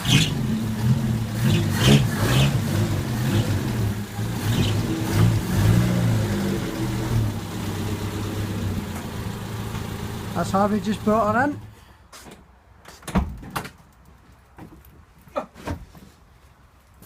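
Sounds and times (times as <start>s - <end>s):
car engine revving: 0.0s - 11.1s.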